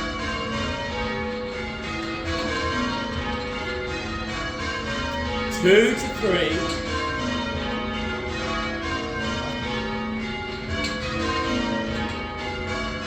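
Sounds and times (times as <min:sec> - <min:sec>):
church bells ringing: 0:00.0 - 0:13.0
person calling changes: 0:05.6 - 0:06.7.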